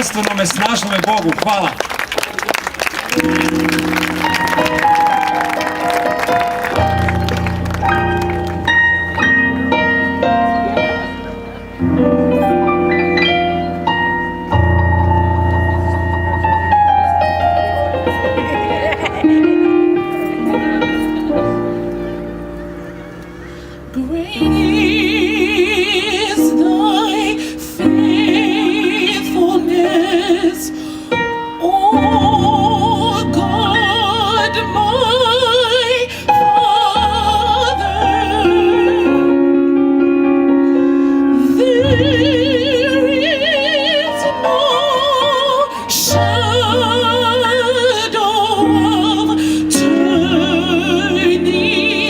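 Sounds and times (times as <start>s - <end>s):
sustained keyboard chords: 3.0s - 52.0s
woman singing gospel song: 23.9s - 39.4s, 41.4s - 52.0s.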